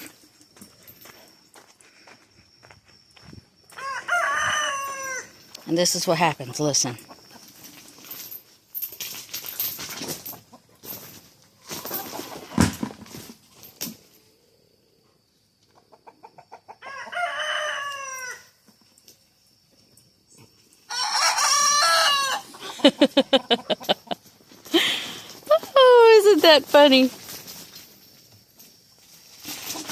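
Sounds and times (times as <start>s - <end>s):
roosters crowing: 3.7s - 5.5s, 16.6s - 18.6s, 20.9s - 24.1s
chicken clucking and squawking: 15.7s - 18.2s, 20.9s - 24.2s.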